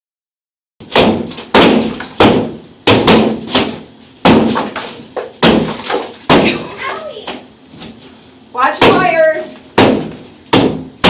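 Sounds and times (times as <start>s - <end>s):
heavy blows against a wall: 0.8s - 6.7s, 8.7s - 11.0s.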